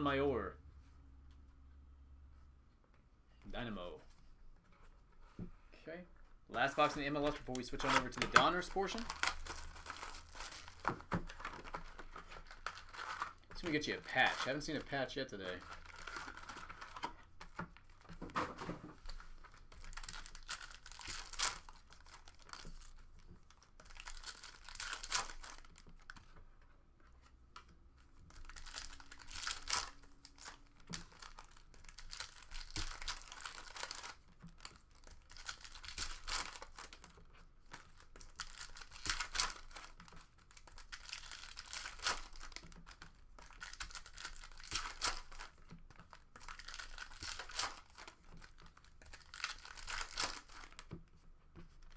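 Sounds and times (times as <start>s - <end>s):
card pack wrappers tearing and crinkling: 6.6s - 17.6s, 19.1s - 26.1s, 28.3s - 50.9s.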